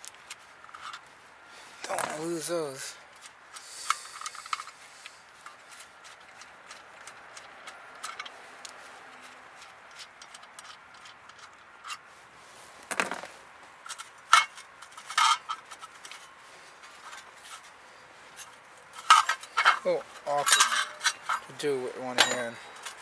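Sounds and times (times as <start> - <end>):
metal bolts and tools clicking: 5.5 - 12.0, 12.9 - 16.4, 18.4 - 23.0
metallic clanks: 18.4 - 23.0.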